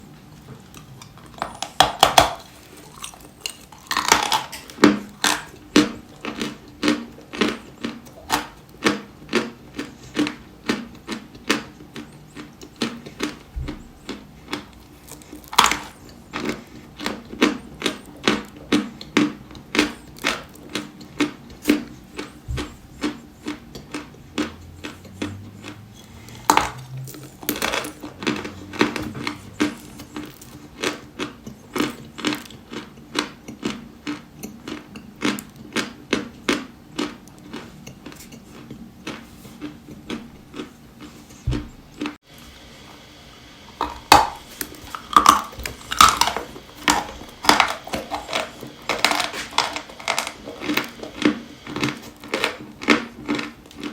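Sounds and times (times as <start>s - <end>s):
chalk being chewed: 5.1s - 42.1s, 44.5s - 53.9s.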